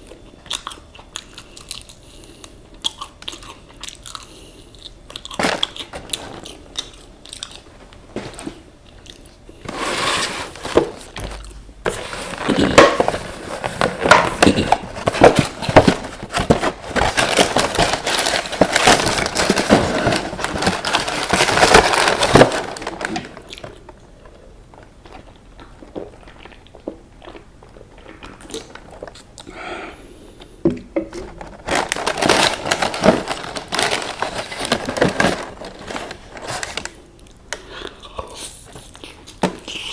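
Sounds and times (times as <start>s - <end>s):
crunching and chewing fried chicken: 0.0s - 9.6s, 12.4s - 29.6s.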